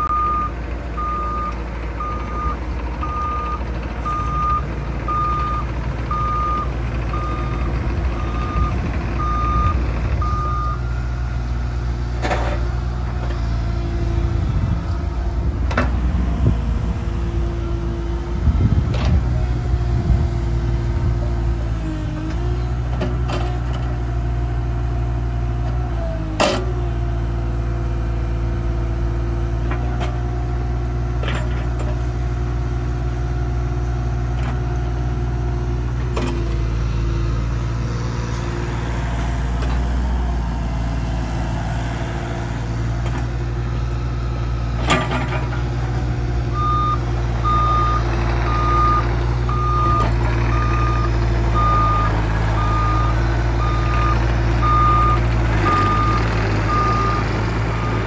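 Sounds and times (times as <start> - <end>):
excavator engine droning: 0.0 - 58.0.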